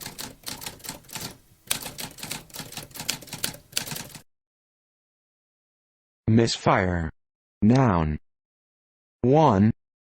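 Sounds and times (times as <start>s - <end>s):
typewriter keys clattering: 0.0s - 4.2s.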